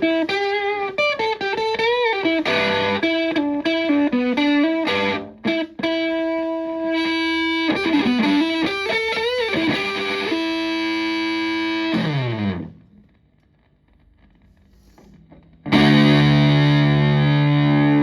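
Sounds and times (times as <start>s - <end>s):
distorted electric guitar lead: 0.0s - 13.1s, 13.8s - 18.0s.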